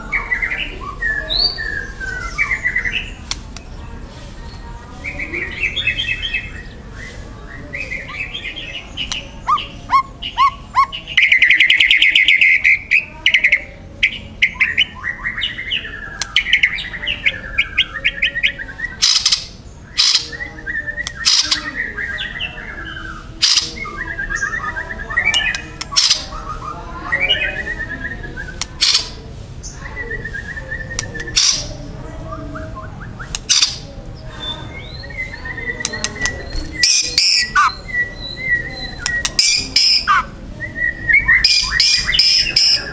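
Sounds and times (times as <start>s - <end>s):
songbird whistling and trilling: 5.3s - 29.0s, 34.4s - 42.9s
loud sharp clicks: 33.3s - 33.8s.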